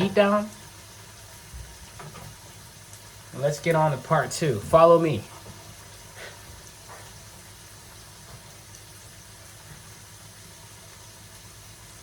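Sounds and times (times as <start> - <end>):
hiss: 6.1 - 6.6.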